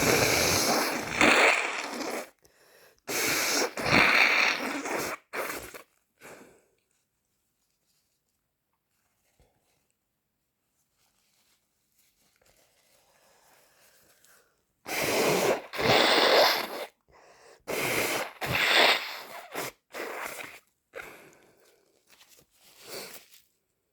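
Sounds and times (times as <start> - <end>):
loud blasts of air through nose: 0.0 - 2.3, 3.1 - 5.8, 14.9 - 17.0, 17.7 - 20.6
faint breathing: 2.4 - 3.1, 17.1 - 17.7.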